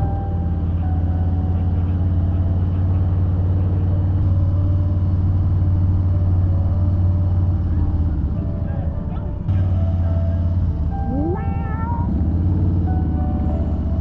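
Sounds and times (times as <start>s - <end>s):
motorcycle exhaust running steadily: 0.0s - 11.1s.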